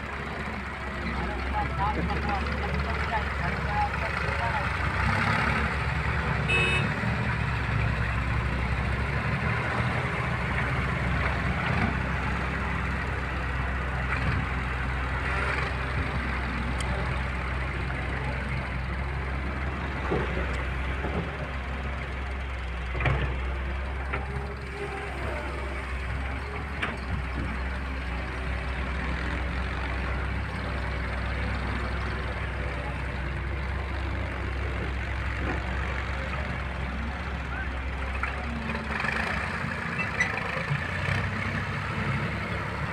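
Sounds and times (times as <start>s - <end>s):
heavy diesel engines running: 0.0s - 42.9s.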